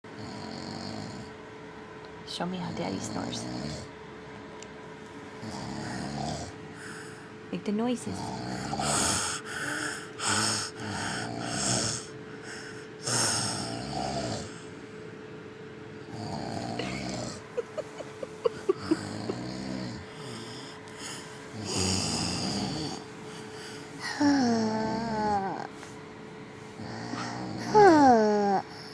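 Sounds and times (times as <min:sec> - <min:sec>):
child imitating snoring: 0:00.2 - 0:01.3, 0:03.1 - 0:03.9, 0:05.4 - 0:07.1, 0:08.1 - 0:14.7, 0:16.0 - 0:25.8, 0:26.8 - 0:28.9.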